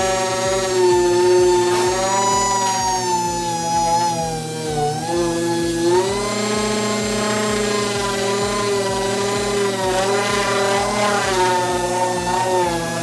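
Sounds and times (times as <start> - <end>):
air sander whining on sheet metal: 0.0 - 13.0.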